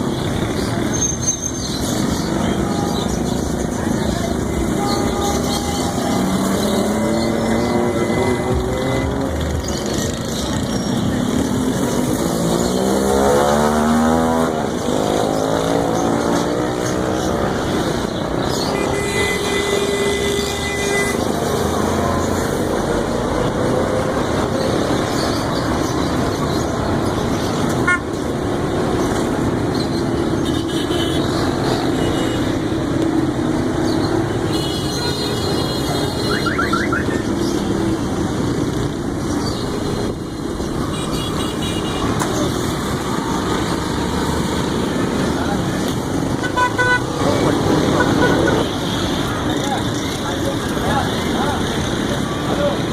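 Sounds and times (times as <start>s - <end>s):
vehicles and motorcycles passing: 0.0s - 52.9s
engine revving: 5.9s - 17.9s.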